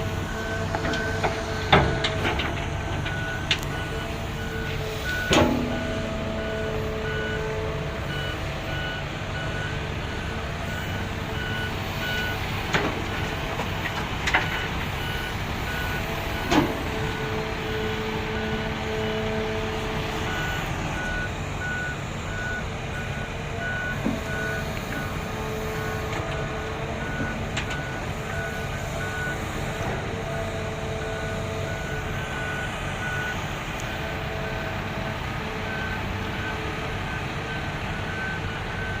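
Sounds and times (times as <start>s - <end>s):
vehicle engine rumble: 0.0s - 39.0s
vehicle reversing alarm beeping: 0.0s - 39.0s.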